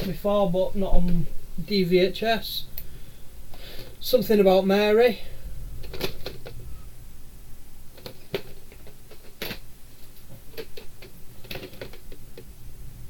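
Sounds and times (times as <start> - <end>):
plastic cases clicking and knocking: 5.8 - 6.6, 7.9 - 12.5.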